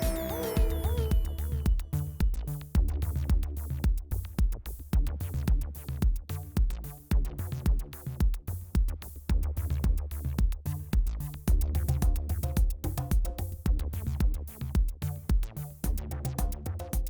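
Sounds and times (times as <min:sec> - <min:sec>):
electronic music: 0:00.0 - 0:04.2
bass line: 0:00.0 - 0:17.0
drum machine beat: 0:00.0 - 0:17.0.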